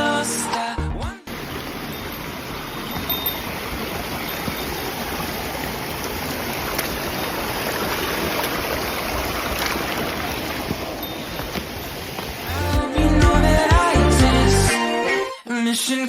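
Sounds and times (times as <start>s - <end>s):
rushing water: 1.3s - 12.9s.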